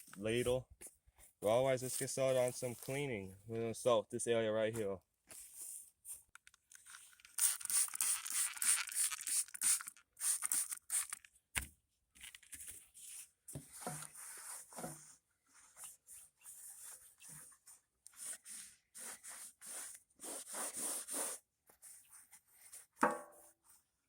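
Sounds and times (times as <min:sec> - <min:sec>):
single knock: 0:23.0 - 0:23.4.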